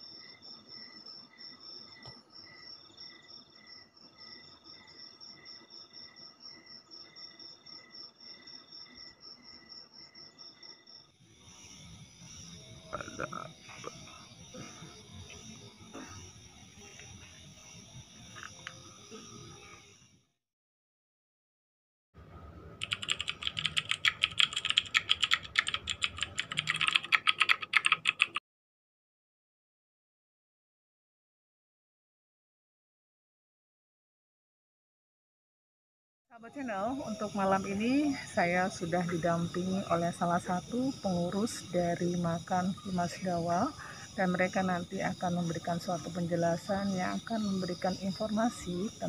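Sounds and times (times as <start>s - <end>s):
crickets chirping: 0.0s - 20.3s, 22.8s - 28.4s, 36.4s - 49.0s
high insect pulsing: 7.5s - 20.2s, 22.8s - 28.4s, 36.5s - 49.0s
insect buzzing trill: 7.6s - 20.2s
rapid irregular clicking: 22.8s - 28.4s.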